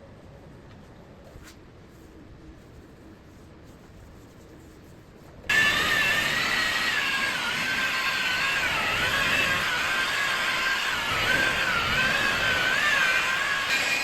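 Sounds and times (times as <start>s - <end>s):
electric polisher motor whine: 5.5s - 14.0s.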